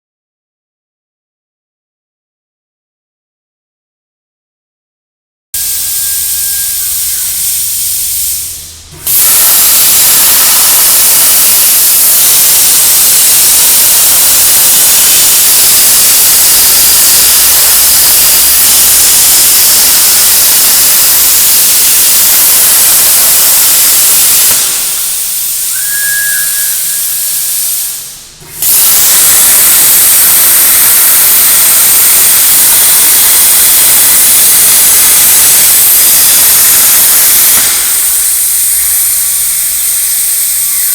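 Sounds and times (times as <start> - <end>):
plasma torch hissing: 5.6 - 40.9
short high beep: 25.6 - 27.8.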